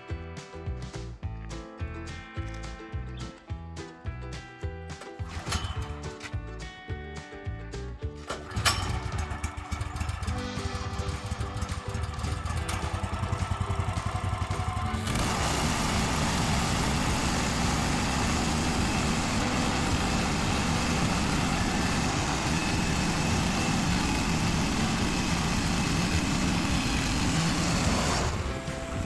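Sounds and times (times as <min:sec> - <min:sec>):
sawmill engine running: 0:08.2 - 0:29.0.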